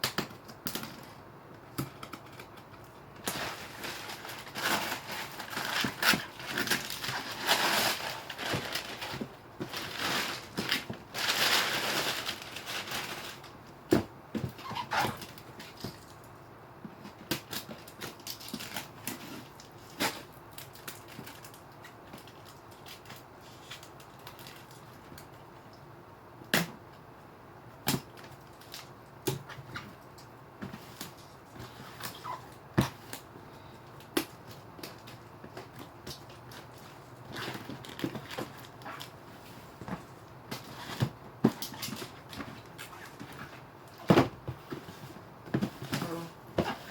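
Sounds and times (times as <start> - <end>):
packaging rustling: 2.0 - 13.6.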